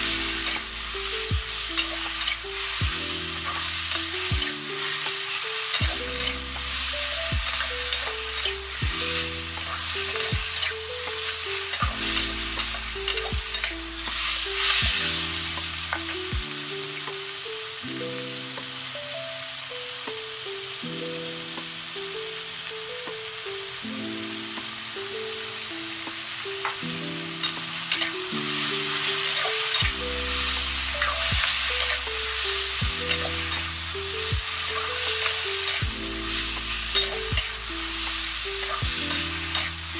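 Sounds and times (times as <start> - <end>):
soft background music: 0.0 - 39.9
stir-fry sizzling in wok: 0.0 - 39.9
spatula clicks and scrapes: 9.6 - 14.8, 27.4 - 35.9, 38.6 - 39.8.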